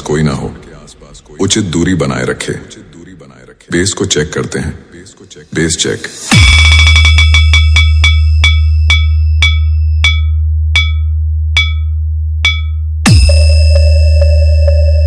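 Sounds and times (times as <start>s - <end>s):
deep bass drone: 6.3s - 15.0s
electronic bell-like pings: 6.3s - 15.0s.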